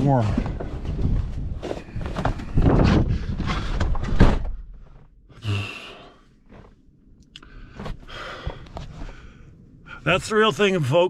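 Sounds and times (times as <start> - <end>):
wind blowing on microphone: 0.8 - 4.1.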